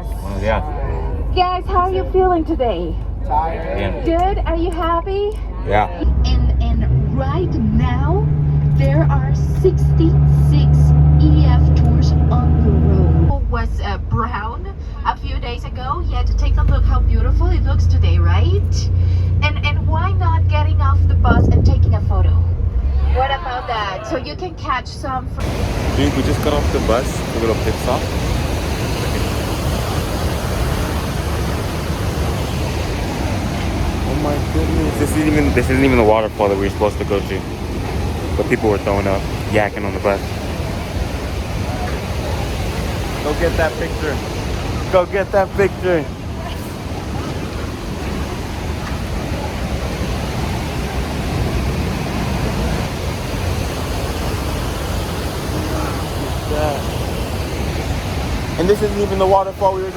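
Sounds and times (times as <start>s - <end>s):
waterfall roaring: 21.1s - 59.9s.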